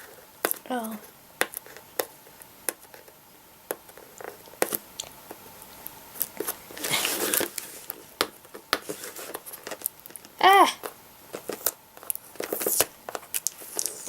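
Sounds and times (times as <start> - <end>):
packaging tearing: 6.2 - 8.0, 11.3 - 14.0.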